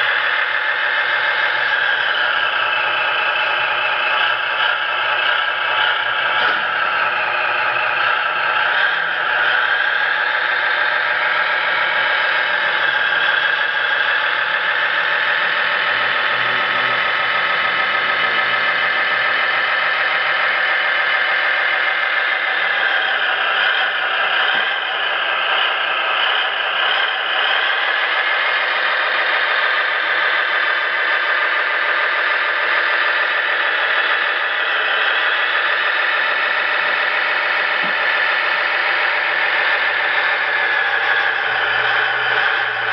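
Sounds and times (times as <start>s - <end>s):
simulated engine sound from speaker: 0.0s - 42.9s.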